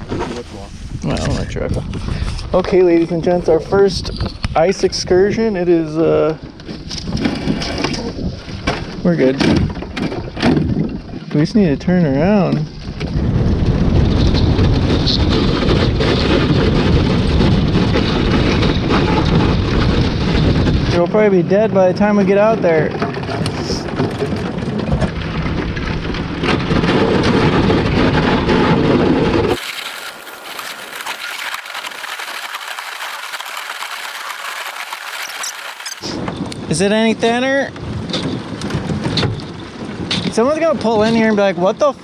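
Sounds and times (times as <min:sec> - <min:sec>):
ice cracking against boat hull: 0:29.5 - 0:36.2.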